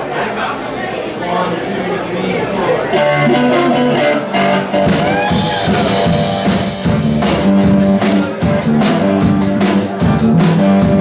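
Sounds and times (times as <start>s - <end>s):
rock band sustained chords: 2.9s - 11.0s
drum kit beat: 3.0s - 11.0s.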